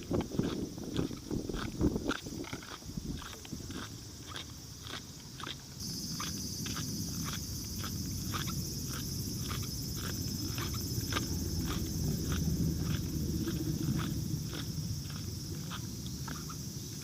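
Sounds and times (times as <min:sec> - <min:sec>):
steady high hiss: 0:05.8 - 0:17.0.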